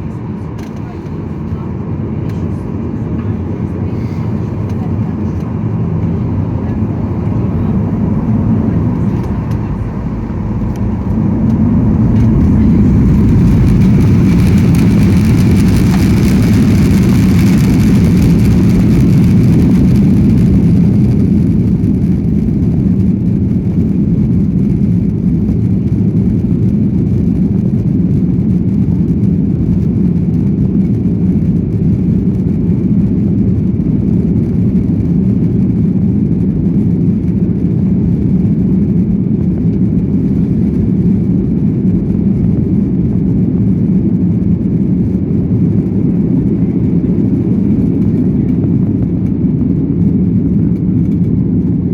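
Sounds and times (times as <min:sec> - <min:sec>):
jet engines low rumble: 0:00.0 - 0:51.9.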